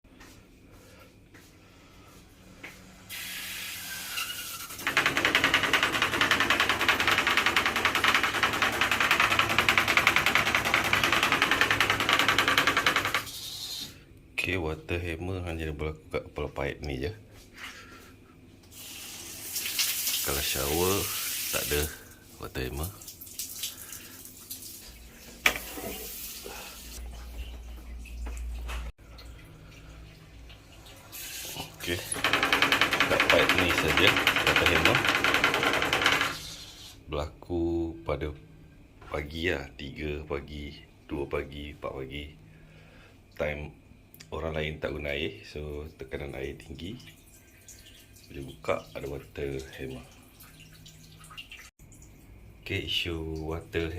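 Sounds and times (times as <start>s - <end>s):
water hissing through tap: 3.1s - 4.8s, 18.7s - 22.2s, 22.8s - 27.1s, 30.8s - 32.2s
water tap running: 3.1s - 13.9s, 18.7s - 37.0s, 47.1s - 52.3s
rapid rattling knock in tap: 4.8s - 13.3s, 32.2s - 36.4s.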